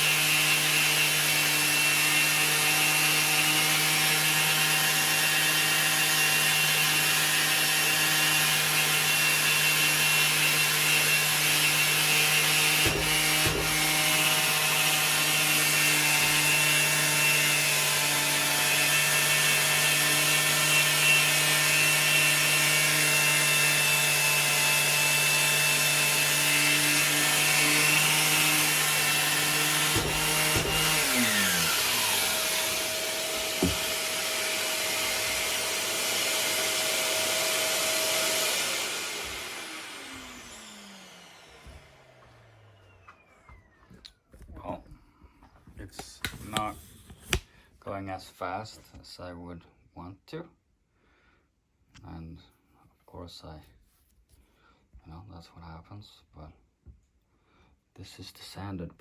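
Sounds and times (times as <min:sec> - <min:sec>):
orbital sander sanding metal: 0:00.0 - 0:42.6.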